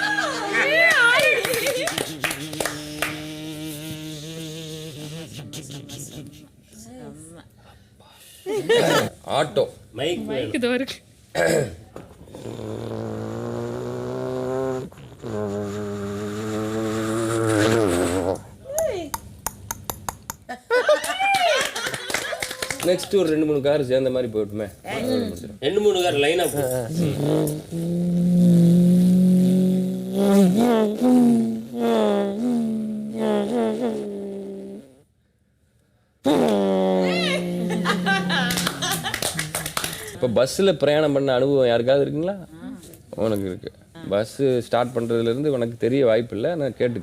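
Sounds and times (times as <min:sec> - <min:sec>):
man imitating engine with voice: 0:01.7 - 0:06.6, 0:26.3 - 0:34.8, 0:36.3 - 0:39.1.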